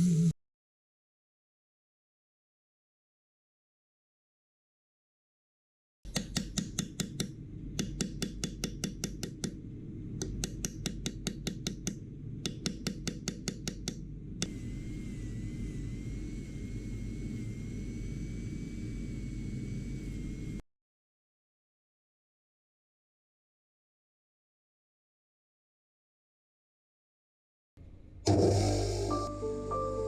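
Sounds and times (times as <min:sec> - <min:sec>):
rotary tool whining: 0:14.4 - 0:20.6, 0:28.3 - 0:29.4.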